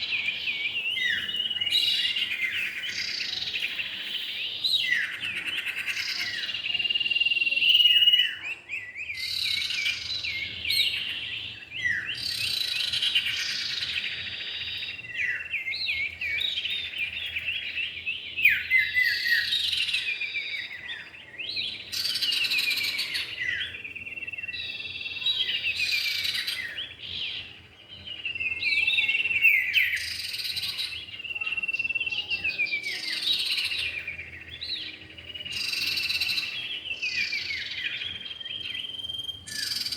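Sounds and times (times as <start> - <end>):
bird chirps and whistles: 35.5 - 39.9.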